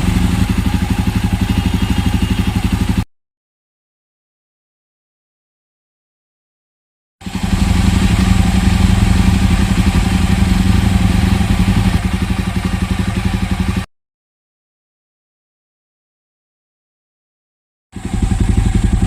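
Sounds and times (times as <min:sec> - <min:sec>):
motorcycle engine running: 0:00.0 - 0:03.0, 0:07.2 - 0:13.9, 0:18.0 - 0:19.0.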